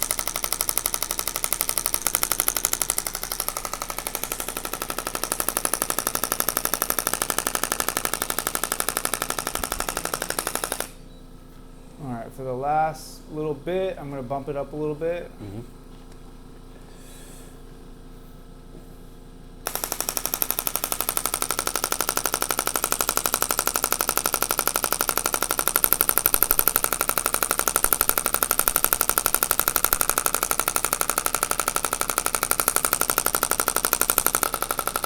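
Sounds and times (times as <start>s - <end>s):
sharp clicking pulses: 0.0s - 11.0s, 19.7s - 35.0s.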